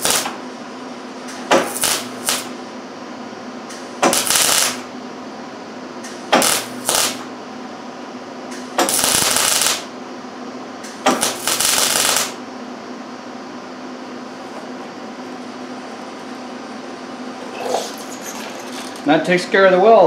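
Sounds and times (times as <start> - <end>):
welding arc crackle: 0.0 - 0.4, 1.5 - 2.6, 3.7 - 4.9, 6.3 - 7.3, 8.7 - 9.9, 10.9 - 12.4
steady low hum: 0.0 - 20.0.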